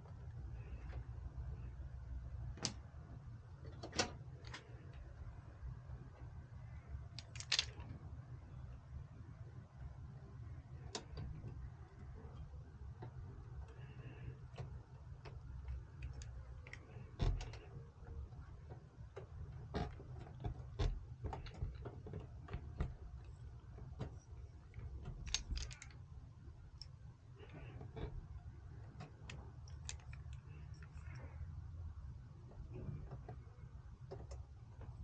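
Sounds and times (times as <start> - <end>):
steady low hum: 0.0 - 35.0
small hard parts clicking: 7.0 - 8.0, 10.8 - 31.6.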